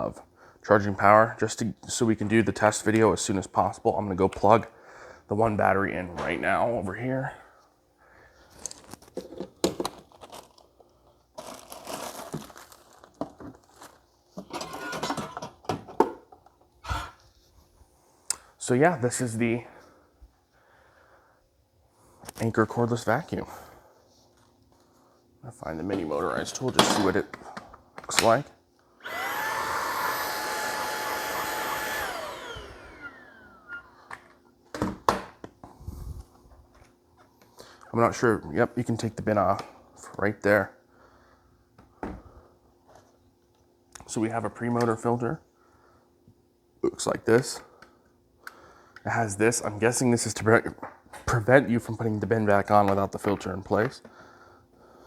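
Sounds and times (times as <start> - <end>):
plastic rustling and crinkling: 8.6 - 14.4
stick vacuum whining: 14.4 - 15.6, 29.0 - 34.3.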